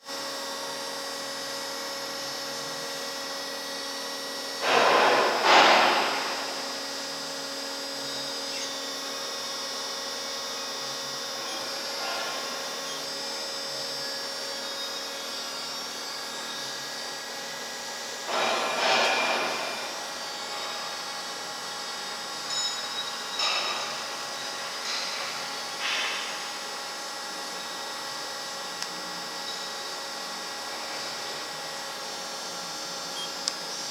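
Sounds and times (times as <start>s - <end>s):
loud noisy bursts: 4.6s - 6.8s.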